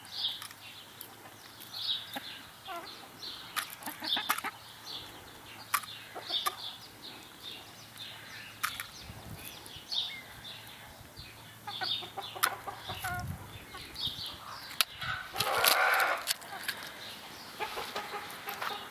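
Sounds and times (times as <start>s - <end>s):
chicken clucking: 2.1s - 3.0s, 3.8s - 4.6s, 6.1s - 6.8s, 11.7s - 16.7s, 17.6s - 18.9s.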